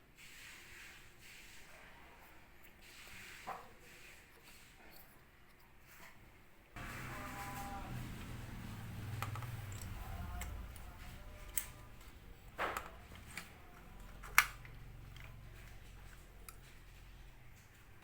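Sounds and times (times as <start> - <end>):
low steady hum: 6.8 - 18.0.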